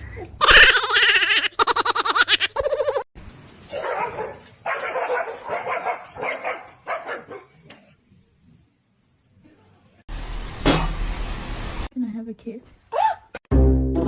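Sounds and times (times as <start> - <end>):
dog barking and yipping: 3.7 - 7.6.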